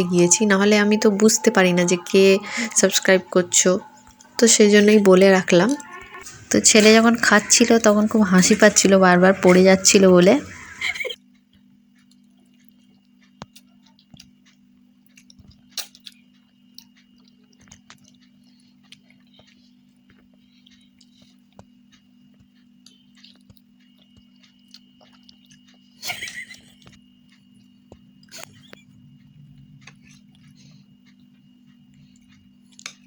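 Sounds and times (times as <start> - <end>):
low hum: 0.0 - 11.2
child chewing: 2.4 - 9.7, 10.4 - 33.0.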